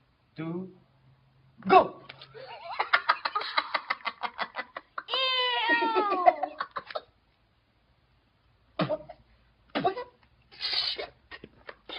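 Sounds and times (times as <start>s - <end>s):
person laughing or shrieking: 4.9s - 7.0s.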